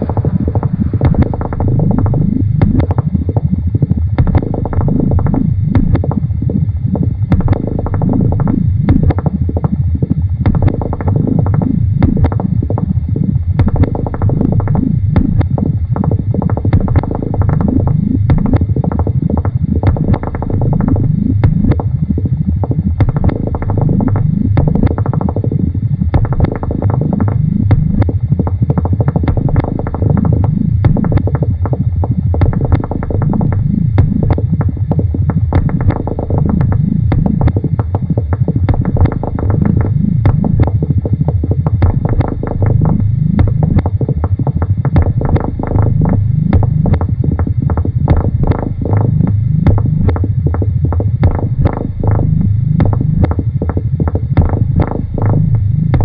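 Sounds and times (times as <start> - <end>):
dense low electronic rumble: 0.0 - 56.0
rapid clicks: 0.0 - 56.0.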